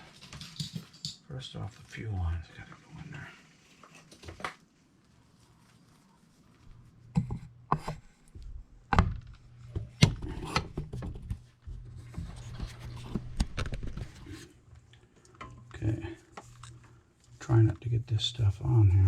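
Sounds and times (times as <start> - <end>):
hands rubbing and scraping: 3.5 - 8.4
steady low hum: 4.8 - 19.0.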